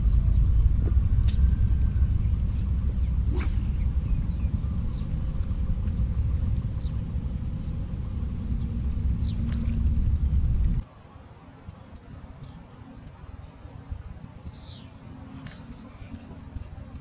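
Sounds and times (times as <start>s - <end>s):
wind buffeting microphone: 0.0s - 10.8s.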